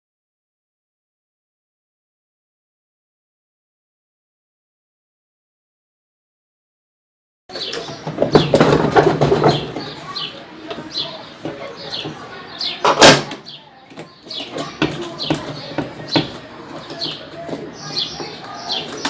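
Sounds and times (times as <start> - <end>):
bird chirping: 7.5 - 19.0
metal knocks and rattles: 7.5 - 19.0.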